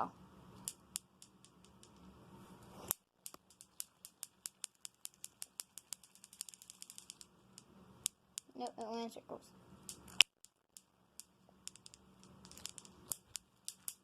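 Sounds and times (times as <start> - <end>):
clacker balls knocking together: 0.6 - 2.1, 3.2 - 8.8, 9.8 - 14.0.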